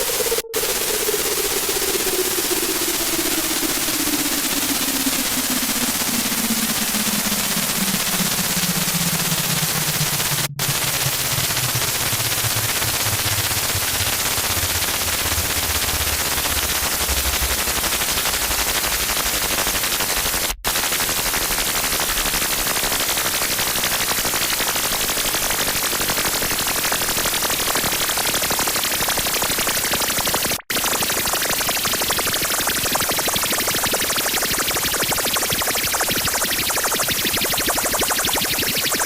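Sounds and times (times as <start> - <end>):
low drone: 0.0 - 19.5
distorted static crackling: 4.2 - 20.9.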